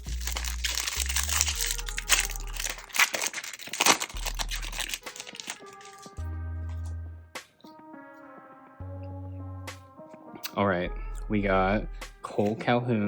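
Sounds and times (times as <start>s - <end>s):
background music with bass: 0.0s - 3.0s, 3.9s - 5.2s, 6.0s - 13.0s
foil wrapper tearing and crinkling: 0.0s - 6.2s.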